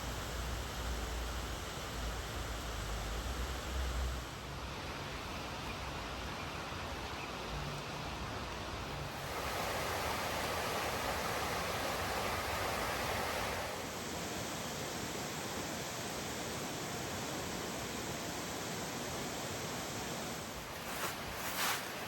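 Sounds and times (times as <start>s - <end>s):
river rushing over waterfalls: 9.0s - 22.0s.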